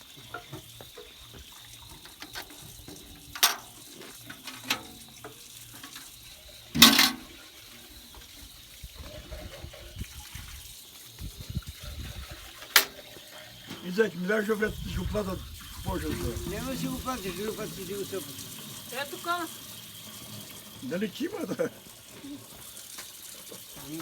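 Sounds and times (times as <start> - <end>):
liquid splashing: 11.7 - 24.0.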